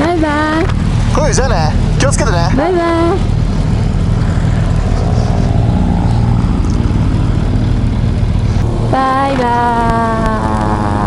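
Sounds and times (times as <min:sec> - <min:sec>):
motorcycle engine running: 0:00.0 - 0:11.0
wind rushing over microphone: 0:03.3 - 0:11.0.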